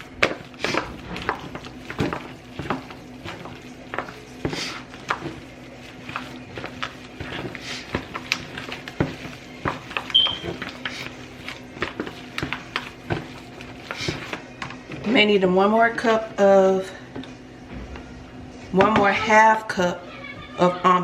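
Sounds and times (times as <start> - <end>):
spatula scraping bowl: 0.0 - 16.5.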